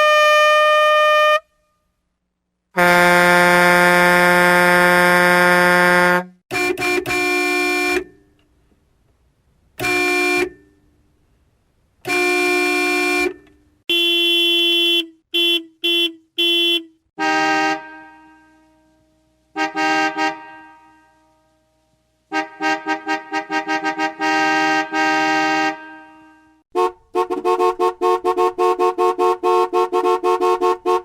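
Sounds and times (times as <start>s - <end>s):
car horns honking: 0.0s - 1.6s, 2.8s - 8.3s, 9.8s - 10.9s, 12.0s - 21.6s, 22.3s - 31.0s.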